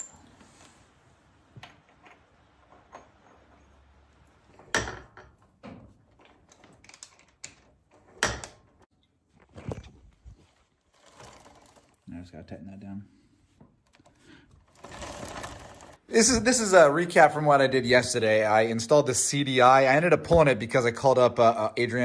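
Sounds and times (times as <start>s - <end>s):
tools and metal parts clicking: 0.0s - 0.4s, 6.1s - 8.8s.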